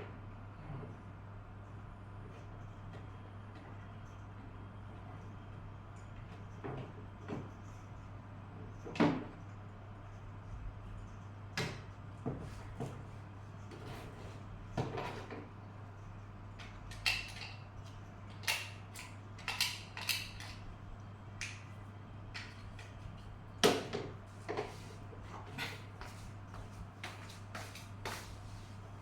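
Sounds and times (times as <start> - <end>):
clicks and knocks of tools: 16.6 - 20.7, 21.4 - 21.7, 22.3 - 24.7.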